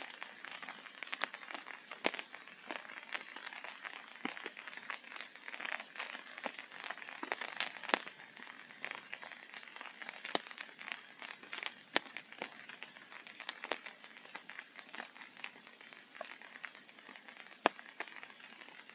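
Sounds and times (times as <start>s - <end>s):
rain pattering on tent fabric: 0.0s - 18.9s.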